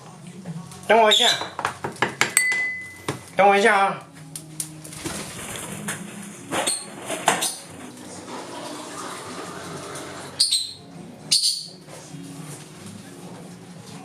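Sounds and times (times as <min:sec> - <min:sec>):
chick squeaking: 0:10.0 - 0:11.8.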